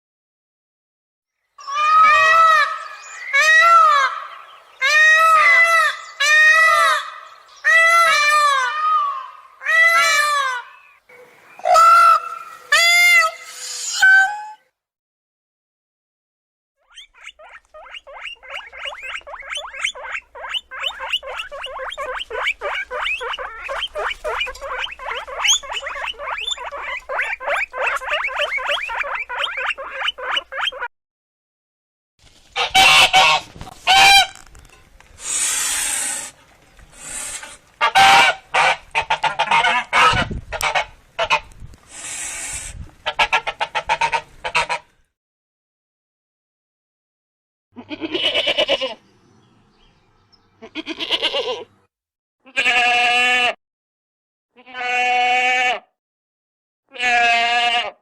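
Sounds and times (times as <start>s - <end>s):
fowl calling: 1.6s - 13.4s, 17.0s - 30.9s, 32.6s - 34.4s, 37.0s - 44.9s.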